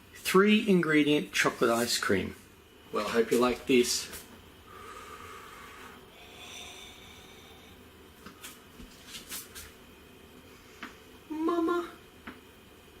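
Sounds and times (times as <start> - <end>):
faint nasal breathing: 4.7 - 8.6.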